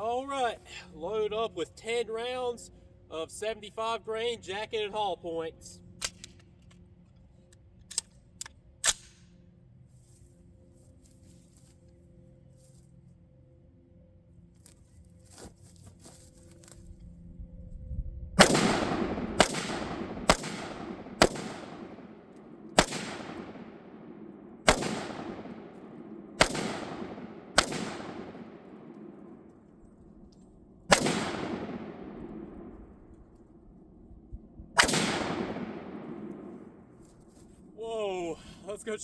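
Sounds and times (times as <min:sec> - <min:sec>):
rifle shots with echo: 0:18.4 - 0:29.7, 0:30.9 - 0:33.2, 0:34.8 - 0:36.9.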